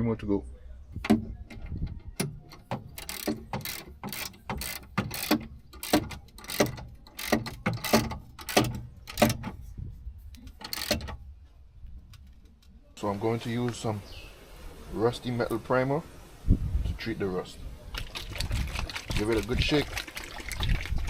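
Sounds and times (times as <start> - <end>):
ratchet wrench clicking: 1.6 - 9.4, 10.5 - 11.2.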